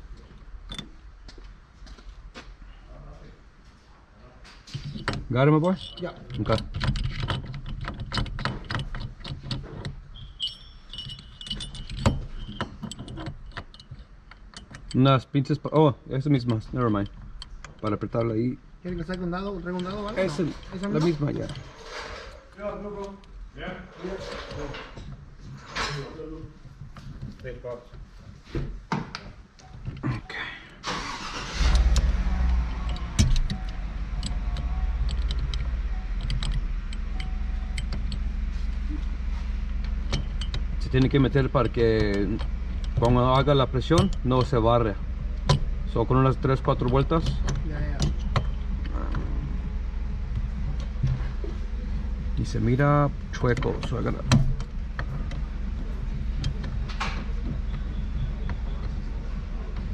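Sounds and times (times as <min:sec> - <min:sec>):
metal tools clicking and clinking: 0:04.7 - 0:22.4, 0:31.0 - 0:38.4, 0:40.0 - 0:49.3
high chime-like ringing tone: 0:10.2 - 0:11.6
car engine starting and idling: 0:30.2 - 0:59.9.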